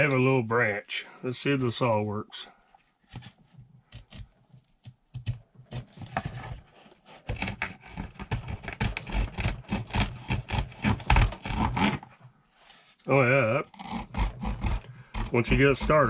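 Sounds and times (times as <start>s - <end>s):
saw cutting wooden branch: 7.0s - 12.2s, 13.6s - 16.0s.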